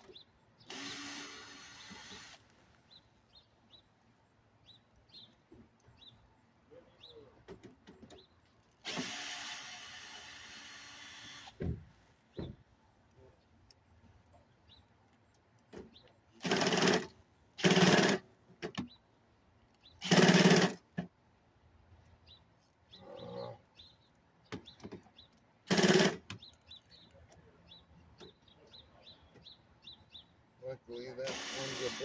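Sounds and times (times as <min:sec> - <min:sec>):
power drill in short bursts: 0:00.7 - 0:02.4, 0:08.8 - 0:11.6, 0:16.4 - 0:18.2, 0:20.0 - 0:20.8, 0:25.7 - 0:26.2, 0:31.2 - 0:32.0.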